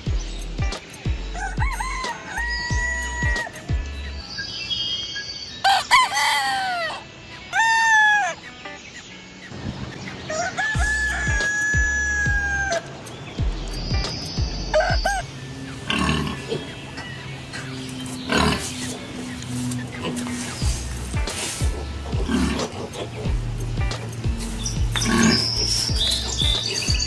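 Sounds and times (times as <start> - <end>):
rooster crowing: 1.4 - 3.6, 5.6 - 8.4, 10.3 - 12.9
chicken clucking: 15.9 - 23.4.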